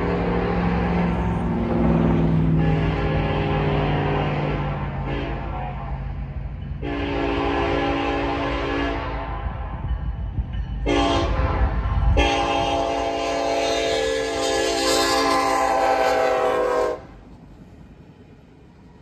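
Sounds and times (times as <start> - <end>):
low rumble of train: 0.0 - 19.0
locomotive air horn blasts: 2.5 - 5.9, 6.8 - 9.6, 10.8 - 17.2.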